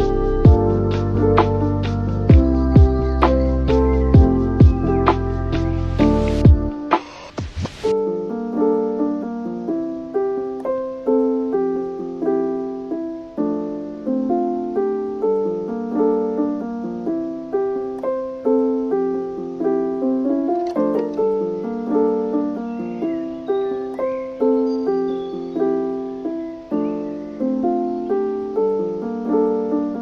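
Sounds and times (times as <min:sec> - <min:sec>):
gentle piano melody: 0:00.0 - 0:07.0, 0:07.9 - 0:30.0.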